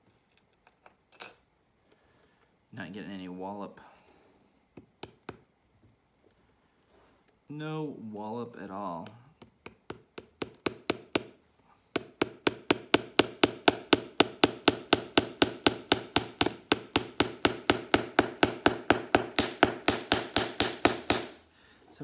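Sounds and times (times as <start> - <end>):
hammer tapping nails into leather: 9.0 - 21.4.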